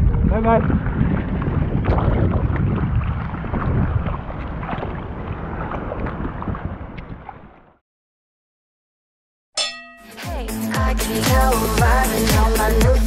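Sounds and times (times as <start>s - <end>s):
water splashing: 0.0s - 7.8s
wind rumbling on microphone: 0.0s - 7.8s.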